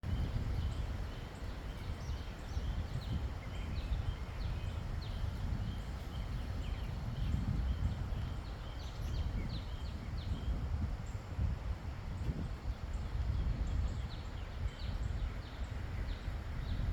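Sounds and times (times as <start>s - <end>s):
wind rumbling on microphone: 0.0s - 16.9s
small birds chirping: 0.1s - 11.2s.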